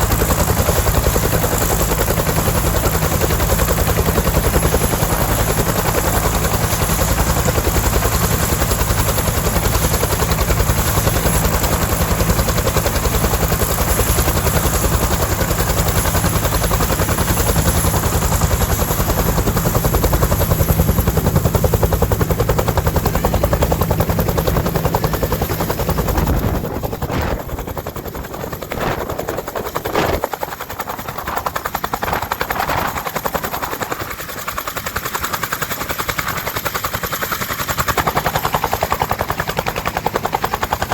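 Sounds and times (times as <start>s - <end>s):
helicopter rotor blade slap: 0.0s - 34.4s
turbine engine whine: 10.6s - 33.3s.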